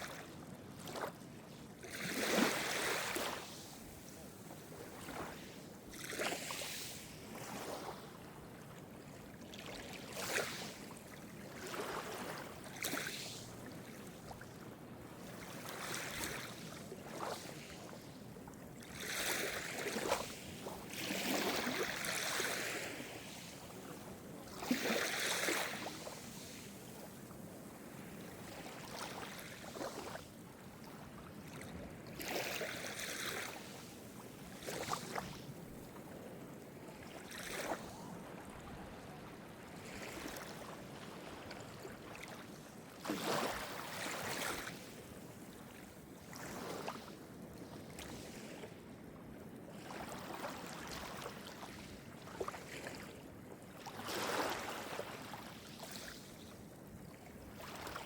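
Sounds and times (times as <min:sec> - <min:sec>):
small waves breaking on shore: 0:00.0 - 0:49.0, 0:49.6 - 0:58.0
steady hiss of sea: 0:05.2 - 0:07.4, 0:21.7 - 0:24.1, 0:24.7 - 0:28.6.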